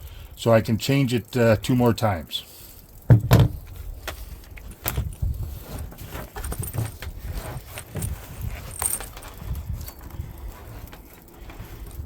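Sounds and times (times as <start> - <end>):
small items clicking and knocking: 2.8 - 12.0.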